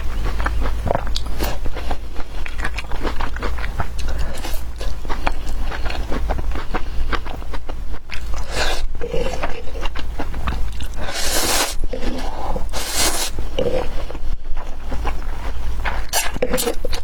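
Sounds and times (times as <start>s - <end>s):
biting and chewing: 0.0s - 17.0s
steady low hum: 0.0s - 17.0s
hissing bursts: 11.0s - 11.8s, 12.7s - 13.4s.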